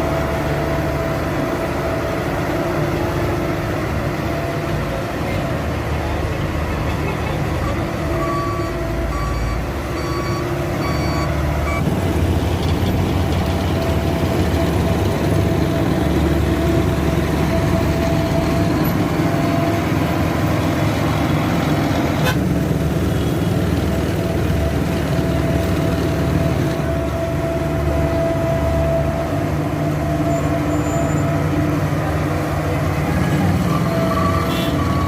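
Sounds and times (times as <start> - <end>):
heavy diesel engines running: 0.0 - 35.0
reversing alarm beeping: 7.6 - 11.9.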